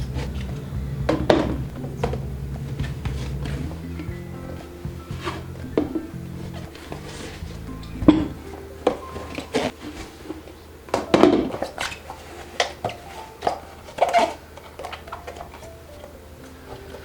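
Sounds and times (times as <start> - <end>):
containers knocking and clattering: 0.0 - 16.1.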